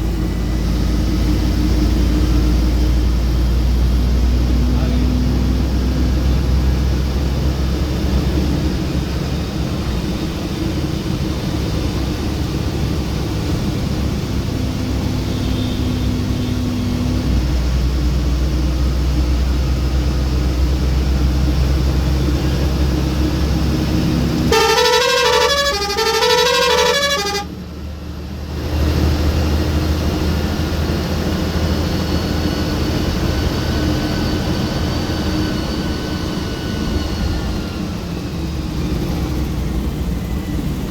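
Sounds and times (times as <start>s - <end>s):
bus diesel engine running: 0.0s - 40.9s
multi-tone horn tune: 24.4s - 27.6s.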